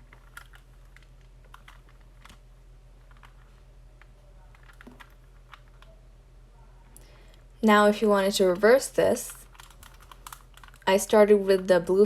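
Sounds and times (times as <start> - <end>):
low steady hum: 0.0 - 12.0
plastic puzzle cube clicks: 9.4 - 10.8.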